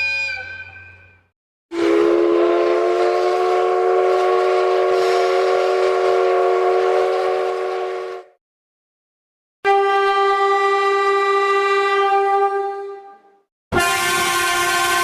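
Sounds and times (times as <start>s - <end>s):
train horn blast: 1.7s - 8.4s, 9.6s - 15.0s.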